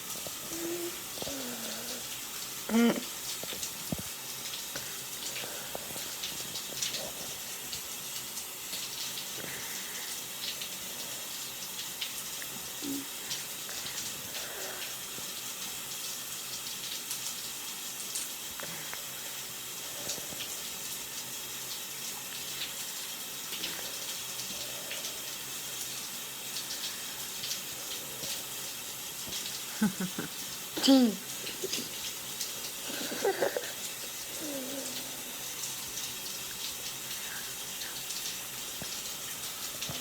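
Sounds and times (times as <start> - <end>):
person breathing with stridor: 0.3 - 3.0, 4.8 - 6.3, 9.3 - 10.4, 12.8 - 15.2, 32.6 - 35.5, 37.1 - 38.3.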